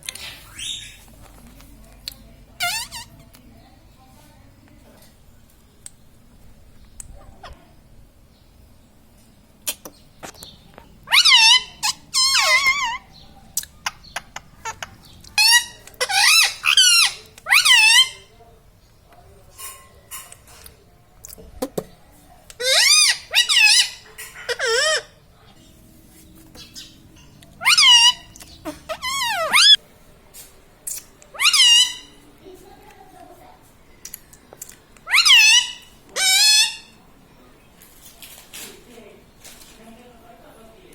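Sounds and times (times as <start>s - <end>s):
parrot shrill calls: 0.2s - 1.0s, 2.6s - 3.1s, 11.1s - 13.1s, 15.4s - 18.2s, 22.6s - 25.2s, 27.6s - 29.8s, 31.3s - 32.2s, 35.0s - 37.0s.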